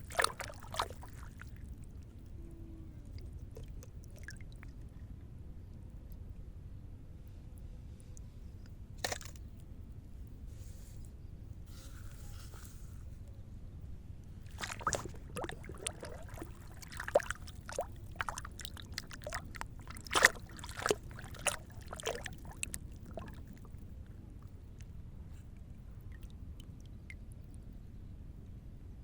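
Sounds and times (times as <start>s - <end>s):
water splashing and sloshing: 0.0s - 2.0s, 3.1s - 4.9s, 14.4s - 24.1s
steady low rumble: 13.4s - 29.0s.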